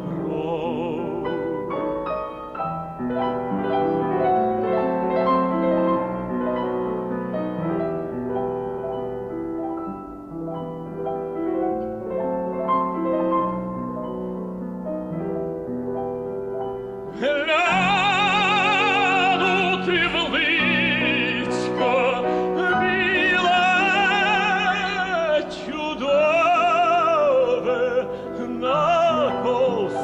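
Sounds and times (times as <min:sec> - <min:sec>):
tenor voice singing with vibrato: 0:00.0 - 0:02.3, 0:17.1 - 0:30.0
piano playing chords and melody: 0:00.0 - 0:30.0.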